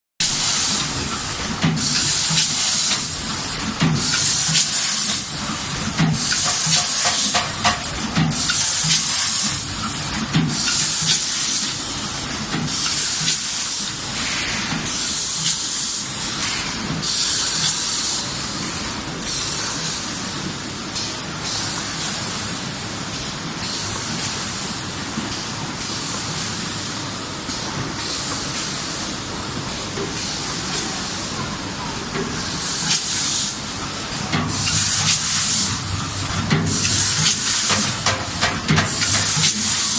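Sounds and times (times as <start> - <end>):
machine mechanism clatter: 0.3 - 14.0, 32.1 - 39.9
short bursts of air hiss: 32.6 - 33.6, 34.5 - 35.9, 36.7 - 38.1, 38.9 - 39.9.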